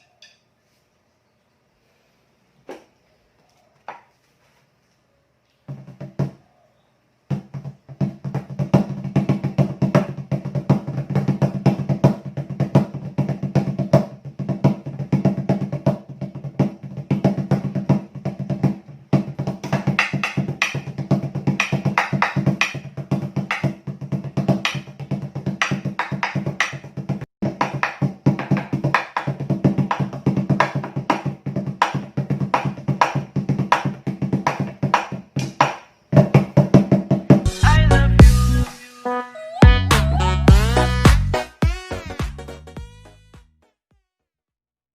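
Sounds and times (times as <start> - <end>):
floor tom drumming: 7.3 - 38.7, 39.6 - 43.0.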